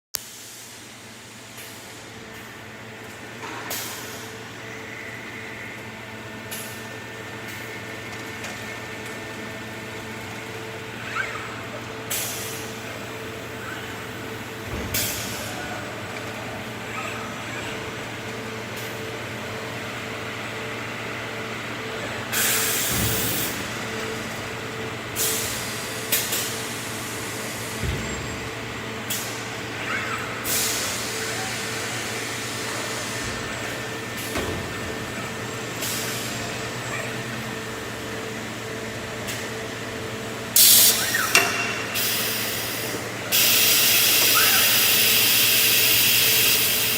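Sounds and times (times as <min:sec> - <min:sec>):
compressed air hissing: 0:41.9 - 0:46.9.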